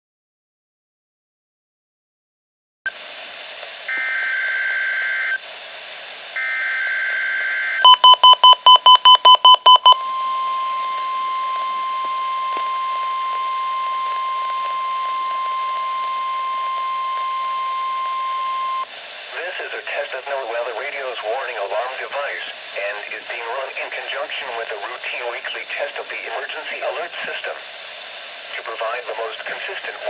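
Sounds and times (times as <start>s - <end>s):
radio static hiss: 2.9s - 10.0s, 10.6s - 30.0s
steady warning alarm tone: 6.4s - 18.8s
fast loud beeps: 7.8s - 10.4s.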